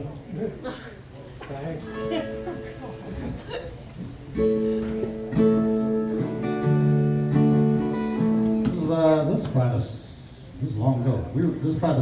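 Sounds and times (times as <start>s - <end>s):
acoustic guitar strummed chords: 4.3s - 9.6s.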